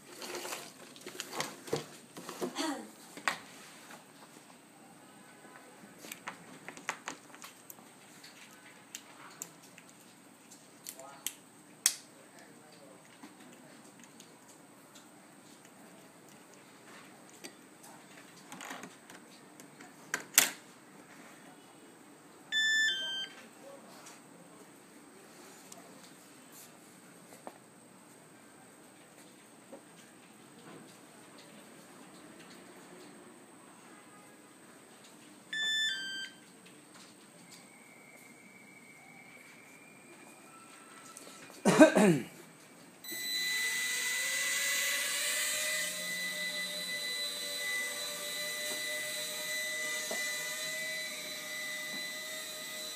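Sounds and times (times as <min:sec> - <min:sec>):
person coughing: 0:02.5 - 0:02.9, 0:41.6 - 0:42.4
short electronic beep: 0:22.6 - 0:23.4, 0:35.6 - 0:36.4, 0:43.1 - 0:43.8
quadcopter motors whining: 0:43.1 - 0:52.9.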